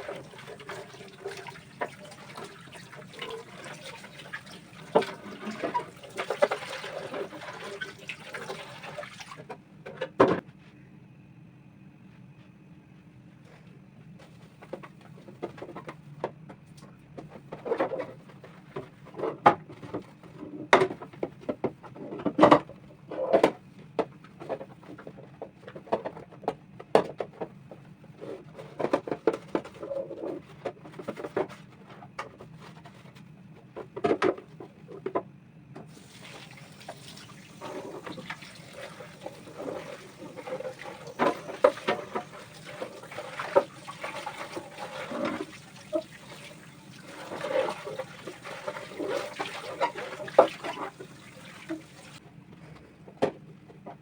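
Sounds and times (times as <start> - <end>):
water running: 0.0 - 9.5, 35.9 - 52.2
items clattering and knocking: 0.0 - 10.5, 13.5 - 54.0.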